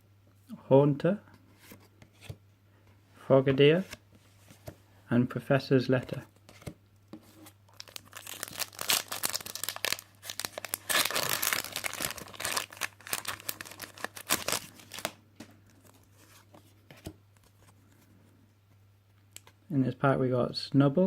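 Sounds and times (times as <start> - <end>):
foil wrapper tearing and crinkling: 7.7 - 15.2.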